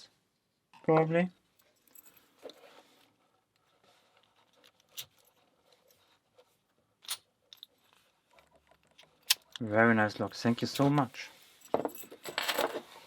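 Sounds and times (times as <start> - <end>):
padlock metallic clicks: 9.0 - 9.6.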